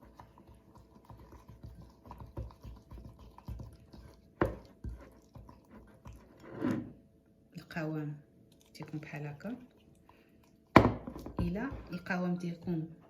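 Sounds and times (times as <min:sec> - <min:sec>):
spoon stirring thick paste: 0:00.0 - 0:06.9, 0:11.0 - 0:13.0.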